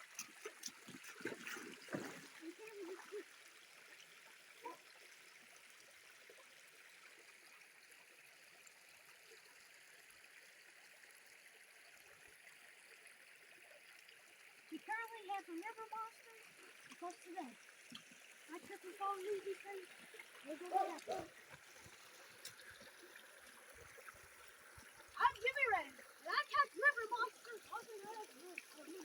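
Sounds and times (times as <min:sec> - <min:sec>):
creek flowing: 0:00.0 - 0:29.0.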